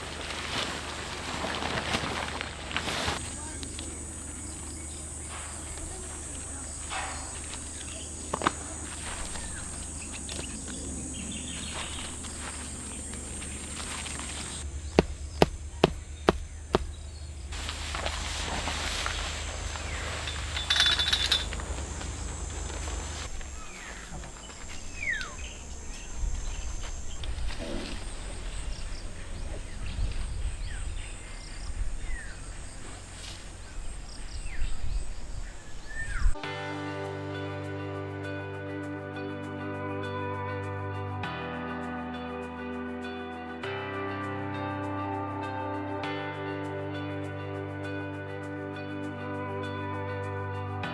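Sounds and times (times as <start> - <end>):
insects droning: 0.0 - 36.4
sharp knocks: 14.6 - 17.6
bird chirps: 19.0 - 36.4.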